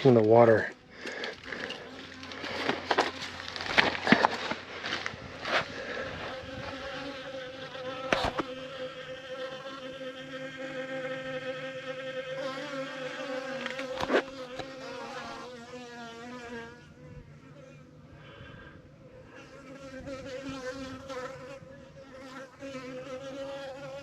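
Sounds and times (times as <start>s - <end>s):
bees buzzing: 0.0s - 17.0s.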